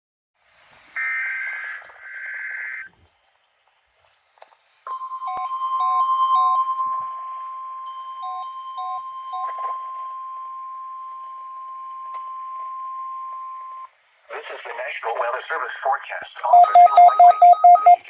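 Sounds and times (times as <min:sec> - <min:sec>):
steady warning alarm tone: 0:04.9 - 0:13.9, 0:16.5 - 0:18.0
intermittent beeping: 0:04.9 - 0:18.0.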